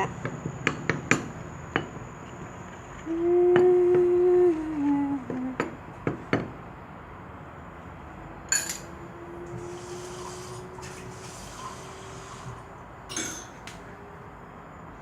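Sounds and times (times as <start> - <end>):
utensils clinking against a bowl: 8.5 - 8.9, 13.1 - 13.6.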